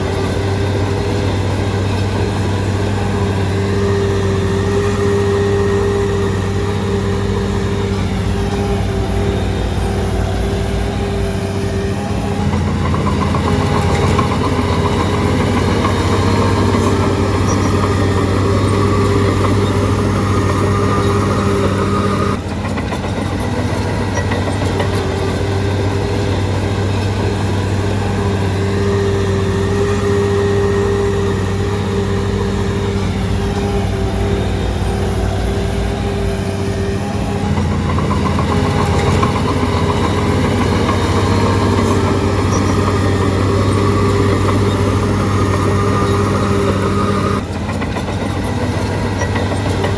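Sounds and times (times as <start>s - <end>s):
bulldozer diesel engine running: 0.0s - 49.9s.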